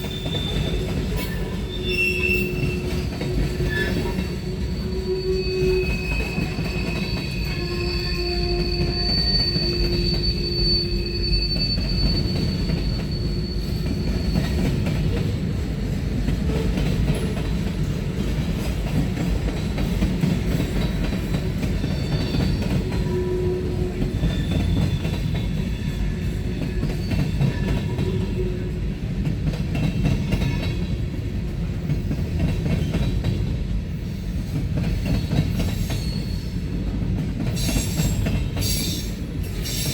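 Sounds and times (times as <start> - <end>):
high-pitched wheel squeal: 0.0 - 14.6
train wheels rumbling on rail: 0.0 - 39.9.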